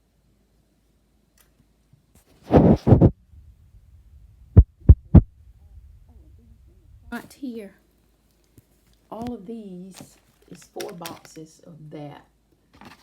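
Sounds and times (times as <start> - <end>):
dull low thumps: 2.5 - 7.2
rustling handling noise: 6.7 - 11.6, 12.7 - 13.0.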